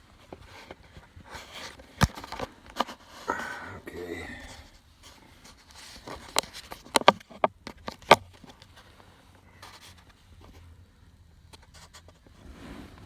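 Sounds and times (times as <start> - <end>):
faint background noise: 0.0 - 13.0
handling knocks and clicks: 0.3 - 3.0, 5.7 - 8.7.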